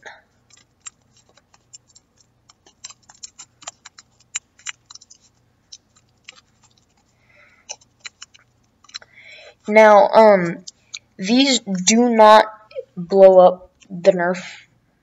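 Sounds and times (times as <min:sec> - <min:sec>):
tape clicking and crinkling: 0:00.3 - 0:09.7, 0:10.3 - 0:11.2
soft rustle: 0:00.4 - 0:09.7.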